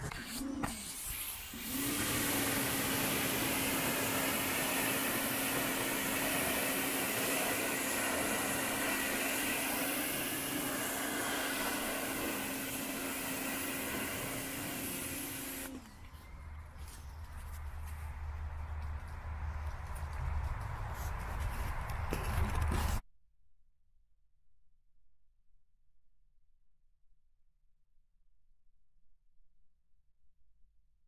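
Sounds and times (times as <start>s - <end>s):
water spray hissing: 0.2s - 15.8s
electric pressure washer running: 1.0s - 15.9s.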